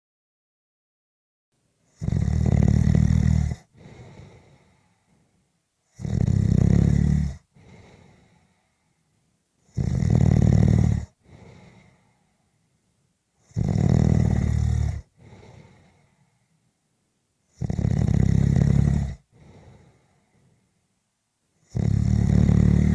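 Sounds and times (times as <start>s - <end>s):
person snoring loudly: 2.0s - 4.4s, 5.9s - 7.8s, 9.7s - 11.6s, 13.4s - 15.4s, 17.5s - 19.2s, 21.6s - 22.9s
quiet breath out: 3.6s - 5.5s, 7.3s - 9.3s, 11.1s - 12.8s, 15.0s - 16.8s, 19.2s - 20.9s.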